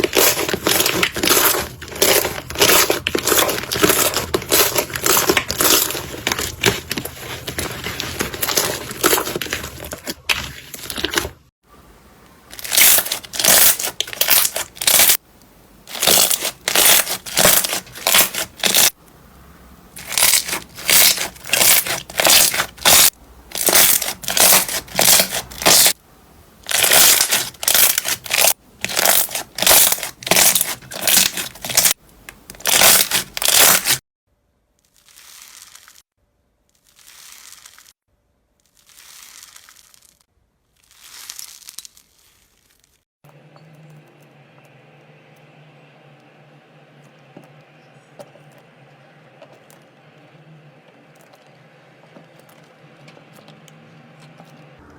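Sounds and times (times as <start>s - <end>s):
slime being squeezed: 12.6s - 15.2s, 20.0s - 26.0s, 26.7s - 31.9s, 34.8s - 36.0s, 36.8s - 37.9s, 38.6s - 40.2s, 40.8s - 43.0s.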